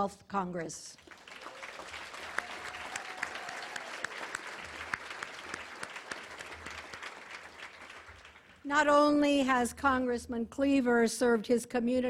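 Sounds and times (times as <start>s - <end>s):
audience applauding: 1.0s - 8.6s.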